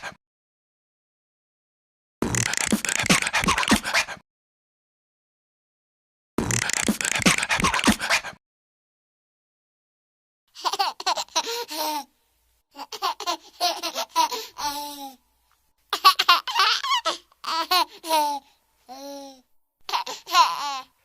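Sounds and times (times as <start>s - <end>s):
baby laughing and babbling: 10.6s - 12.1s, 12.7s - 15.2s, 15.9s - 21.0s.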